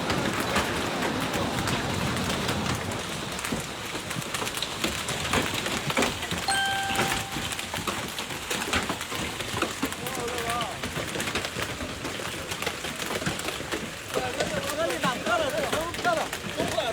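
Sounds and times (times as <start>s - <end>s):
heavy rain or rushing water: 0.0s - 16.9s.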